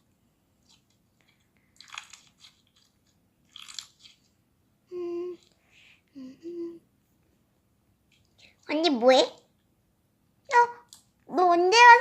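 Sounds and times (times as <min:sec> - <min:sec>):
hummed voice-like notes: 0:04.9 - 0:05.4, 0:06.1 - 0:06.8.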